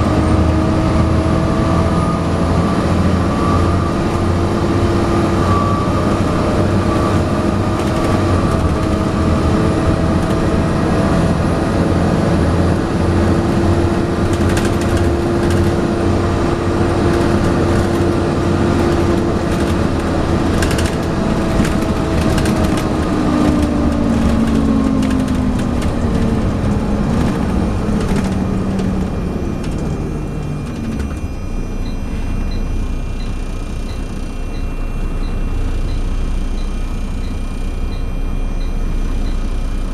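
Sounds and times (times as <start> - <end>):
bus body rattles: 0.0 - 32.6
bus engine whine: 0.0 - 39.9.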